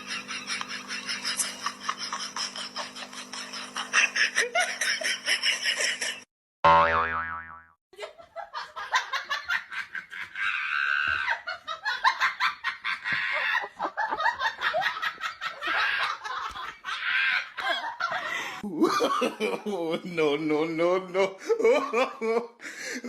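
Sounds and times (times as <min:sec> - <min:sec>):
people laughing: 0:00.0 - 0:06.2, 0:08.0 - 0:23.0
cartoon boing sound effect: 0:06.6 - 0:07.8.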